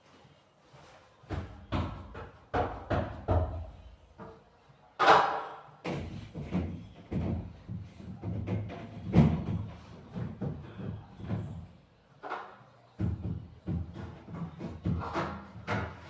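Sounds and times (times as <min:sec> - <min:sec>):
household objects knocking: 0:01.3 - 0:03.7.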